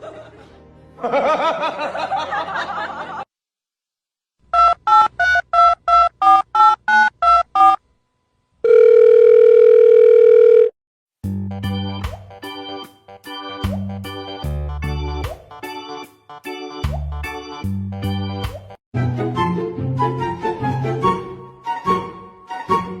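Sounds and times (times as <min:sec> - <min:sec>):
steady telephone tone: 0:08.6 - 0:10.8.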